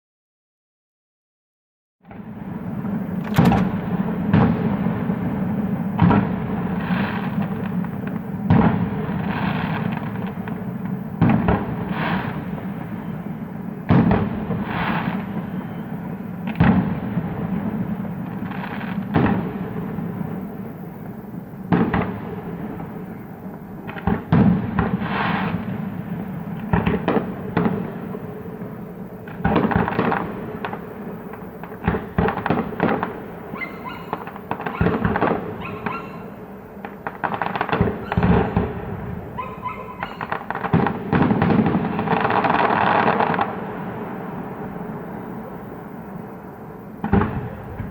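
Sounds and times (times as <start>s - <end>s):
fireworks bangs: 2.0s - 47.9s
fireworks crackling: 2.1s - 47.9s.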